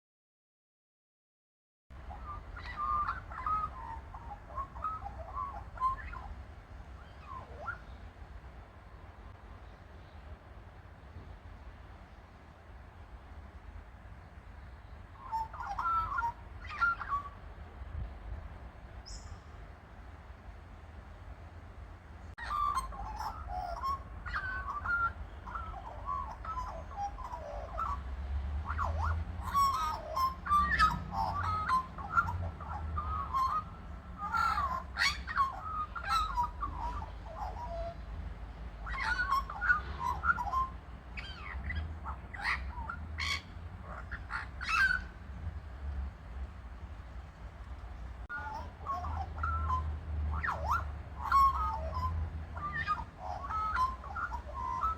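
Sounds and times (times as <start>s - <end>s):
birds warbling: 2.0s - 9.6s, 14.4s - 17.9s, 22.3s - 47.1s, 47.8s - 54.9s.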